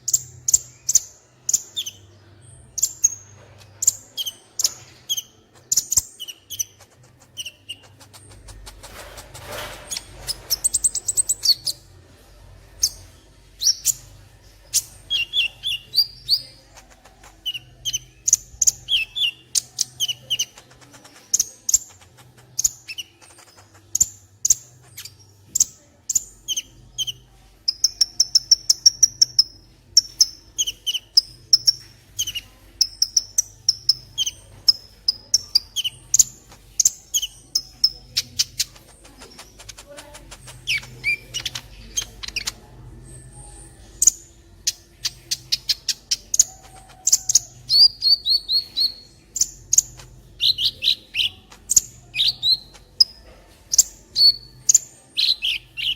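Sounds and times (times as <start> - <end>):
bird chirps and trills: 0.0 - 12.0, 12.6 - 55.9.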